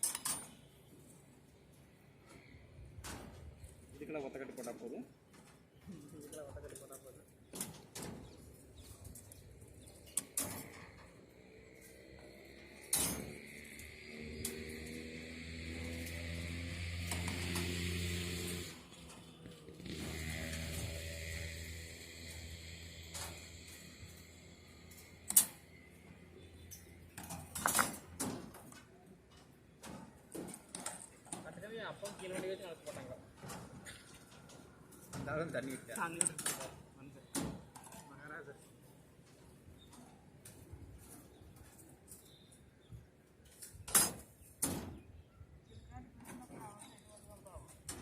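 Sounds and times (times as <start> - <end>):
metal rods and tools clinking: 0.0 - 0.6, 12.8 - 13.6
metallic clinks and knocks: 0.0 - 0.7
low mechanical hum: 7.6 - 31.6.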